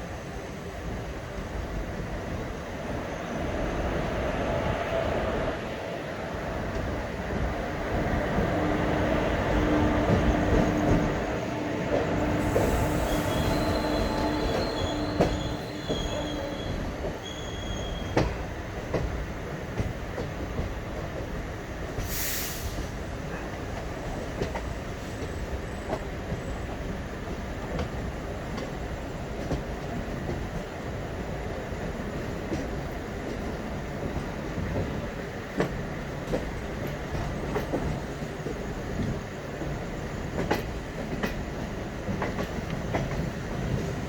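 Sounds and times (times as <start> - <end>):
train coach rumbling on track: 0.0 - 44.0
high wheel squeal: 12.4 - 18.2
brief high hiss: 22.0 - 22.9.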